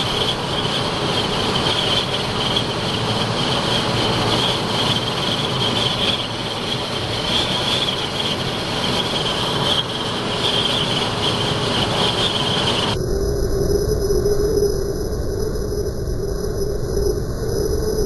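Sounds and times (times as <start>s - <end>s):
moving vehicle rushing noise: 0.0s - 13.0s.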